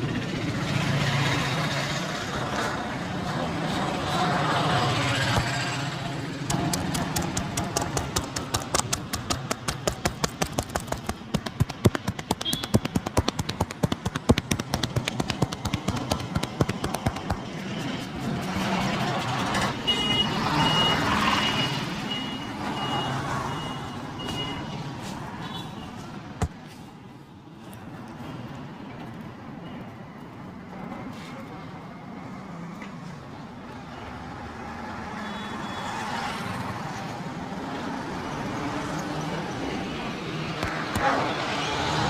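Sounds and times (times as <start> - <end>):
street traffic noise: 0.0 - 42.0
hand slaps and taps massage: 6.5 - 17.5.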